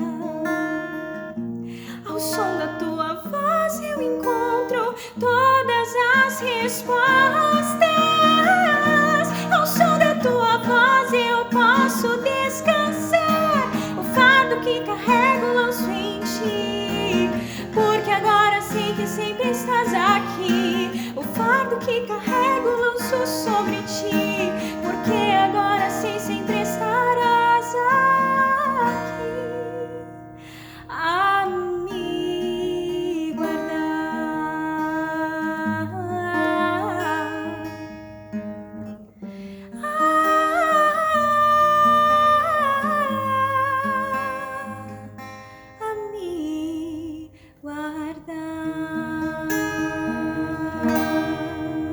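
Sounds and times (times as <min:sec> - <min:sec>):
woman singing: 0:00.0 - 0:38.0, 0:39.6 - 0:51.9
acoustic guitar: 0:00.0 - 0:51.9
wordless held vocal with vibrato: 0:48.1 - 0:51.9.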